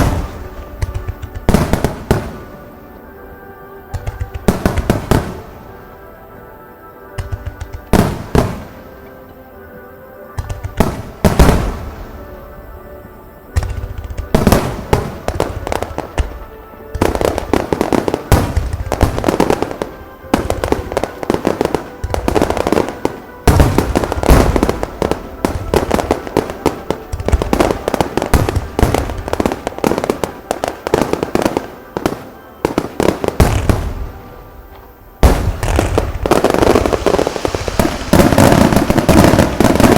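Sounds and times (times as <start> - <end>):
fireworks crackle: 0.0 - 39.9
music: 0.0 - 39.9
firework shell bursts: 35.2 - 39.9.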